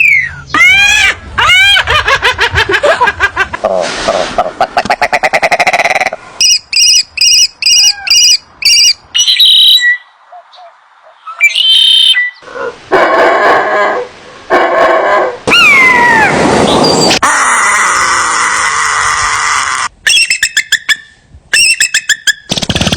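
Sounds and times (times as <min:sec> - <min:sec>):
high-pitched animal chirps: 0:05.8 - 0:10.0
long falling animal call: 0:11.3 - 0:16.4, 0:17.1 - 0:19.9.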